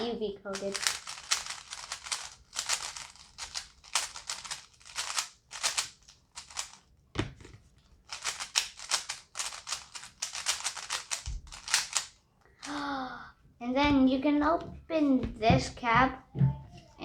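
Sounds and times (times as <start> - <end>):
puzzle cube layers clacking: 0.5 - 7.4, 8.0 - 12.8.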